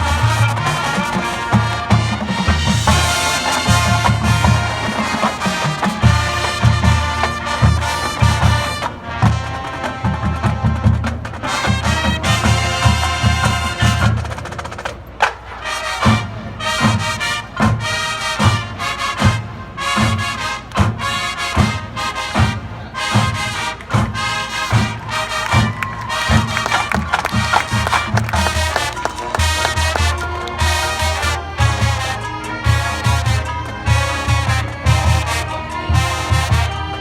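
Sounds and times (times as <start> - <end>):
brass chords: 0.0 - 37.0
bass drums and percussion hits: 25.5 - 31.9.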